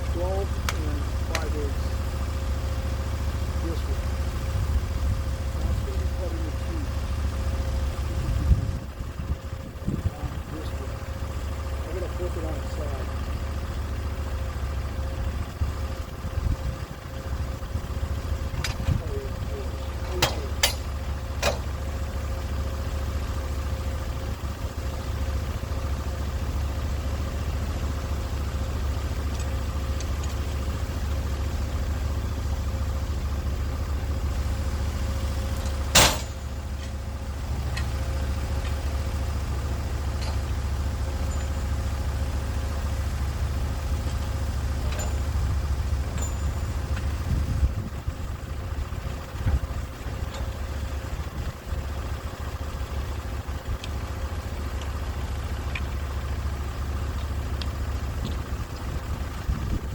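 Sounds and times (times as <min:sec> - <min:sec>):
sawmill engine humming: 0:00.0 - 0:59.9
sharp knock: 0:36.0 - 0:36.4.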